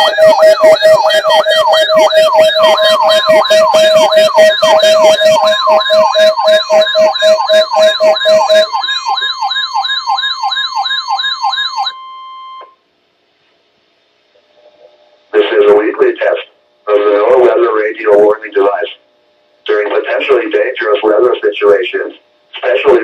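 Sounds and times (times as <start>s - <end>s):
pulsing beep: 0.0s - 12.7s
electronic alert siren sweeping: 0.0s - 12.8s
steady warning tone: 0.0s - 12.8s.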